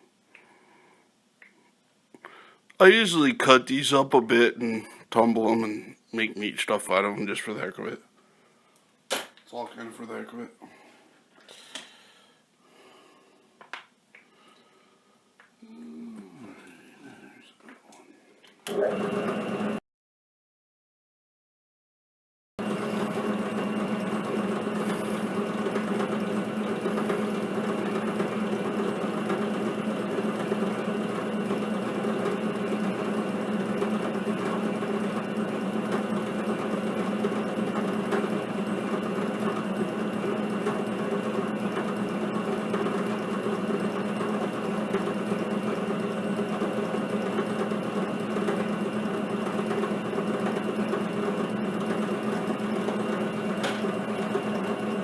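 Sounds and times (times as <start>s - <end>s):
drill press humming: 22.6s - 55.0s
core drill grinding stone: 22.8s - 54.7s.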